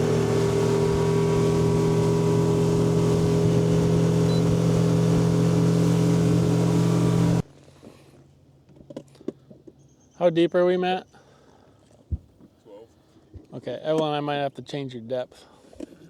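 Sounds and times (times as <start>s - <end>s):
outboard motor droning: 0.0s - 8.1s.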